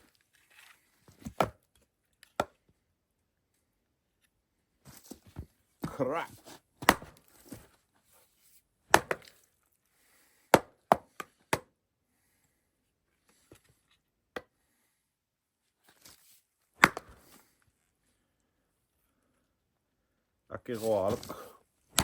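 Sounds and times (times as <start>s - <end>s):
sharp chopping strikes: 8.9s - 9.2s, 16.8s - 17.2s.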